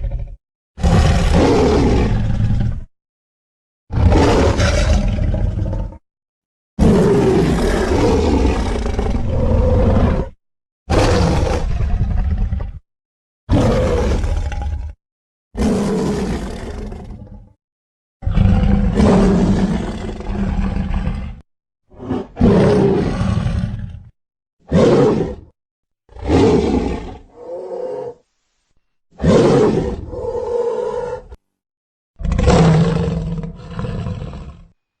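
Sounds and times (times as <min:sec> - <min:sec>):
big cat roaring: 0:00.0 - 0:02.9, 0:03.9 - 0:06.0, 0:06.8 - 0:12.8, 0:13.5 - 0:15.0, 0:15.6 - 0:17.6, 0:18.2 - 0:28.2, 0:29.2 - 0:31.4, 0:32.2 - 0:34.8.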